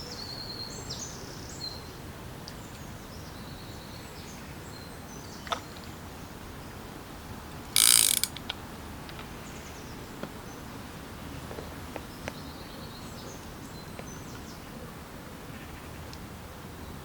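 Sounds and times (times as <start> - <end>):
small clicks: 7.8 - 8.4.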